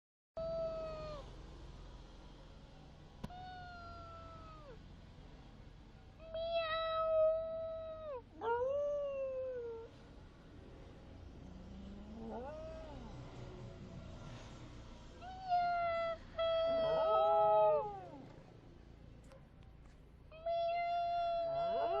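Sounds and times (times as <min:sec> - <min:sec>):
dog howling: 0:08.1 - 0:09.9, 0:12.2 - 0:13.1, 0:15.4 - 0:18.2, 0:20.6 - 0:22.0.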